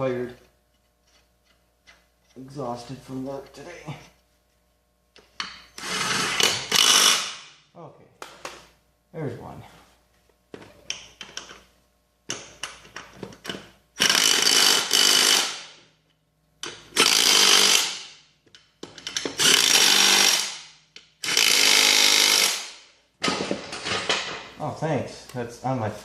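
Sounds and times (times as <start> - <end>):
impact wrench driving bolts: 5.2 - 7.5, 12.3 - 15.9, 16.6 - 24.5.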